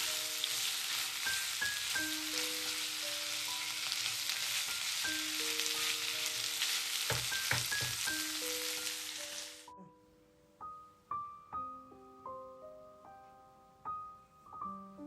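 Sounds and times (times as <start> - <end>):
food sizzling in a frying pan: 0.0 - 9.7.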